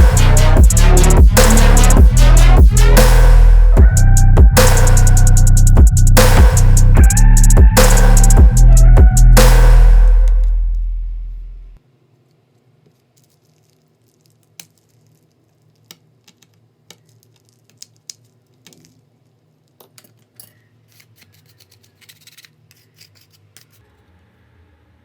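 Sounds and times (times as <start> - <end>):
background music: 0.0 - 11.4.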